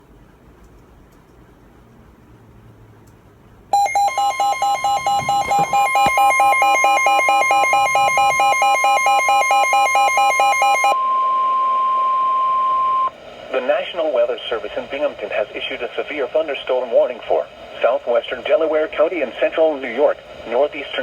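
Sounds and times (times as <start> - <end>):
steady warning alert tone: 3.7 - 13.1
pulsing electronic alarm beeps: 3.8 - 13.1.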